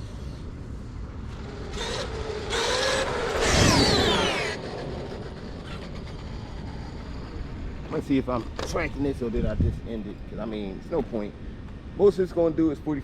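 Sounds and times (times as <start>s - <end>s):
rc truck motor whine: 0.0s - 8.0s
outdoor rumble: 0.0s - 11.9s.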